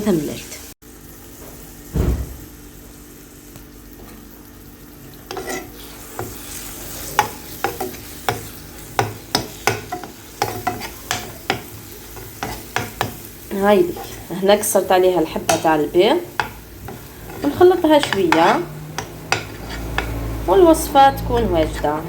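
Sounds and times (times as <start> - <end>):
garlic frying in oil: 0.0 - 22.0
low thump: 1.9 - 2.5
utensil tapping against pan: 7.2 - 11.7, 16.4 - 20.3.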